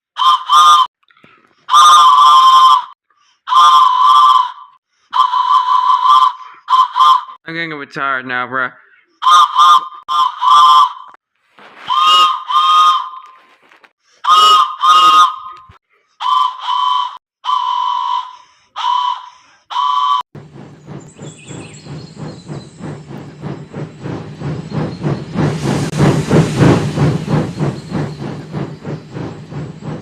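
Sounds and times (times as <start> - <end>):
steam train whistle toots: 0.2 - 0.9, 1.7 - 2.9, 3.5 - 7.3, 9.2 - 11.1, 11.9 - 13.3, 14.2 - 15.6, 16.2 - 20.2
locomotive chuffing: 20.4 - 30.0
steam hiss: 20.4 - 30.0.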